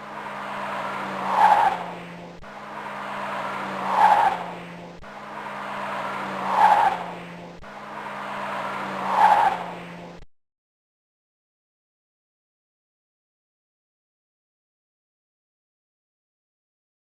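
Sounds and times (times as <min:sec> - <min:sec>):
flat tyre rushing on road: 0:00.0 - 0:10.3
low engine hum: 0:00.0 - 0:10.3.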